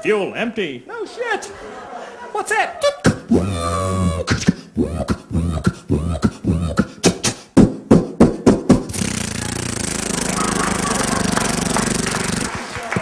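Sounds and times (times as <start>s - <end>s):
man making mouth pops and sputters: 2.8s - 13.0s.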